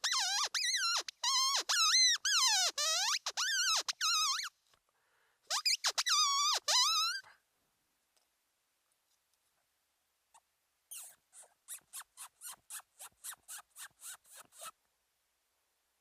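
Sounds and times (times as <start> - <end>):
predator call high squeaks: 0.0 - 4.6, 5.5 - 7.3, 10.9 - 14.8.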